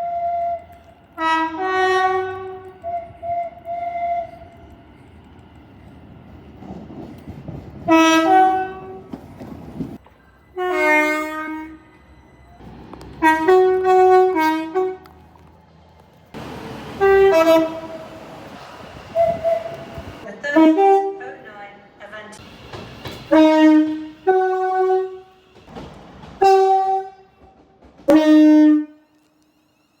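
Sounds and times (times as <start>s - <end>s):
train horn blasts: 0.0s - 4.5s, 7.8s - 9.1s, 10.6s - 11.9s, 13.2s - 15.2s, 16.4s - 18.4s, 19.0s - 21.7s, 23.3s - 29.4s
rumble of passing train: 0.0s - 30.0s.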